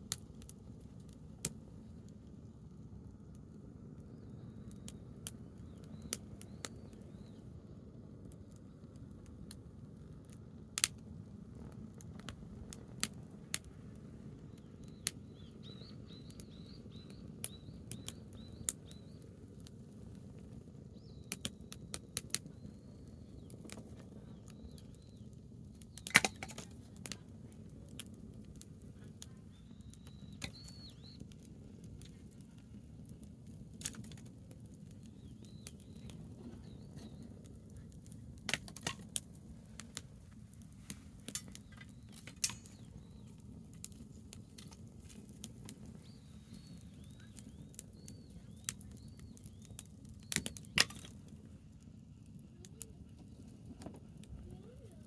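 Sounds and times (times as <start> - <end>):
campfire crackling and popping: 0.0 - 55.0
small bird chirping: 14.4 - 26.9, 29.0 - 32.6, 34.8 - 37.9, 40.9 - 51.2.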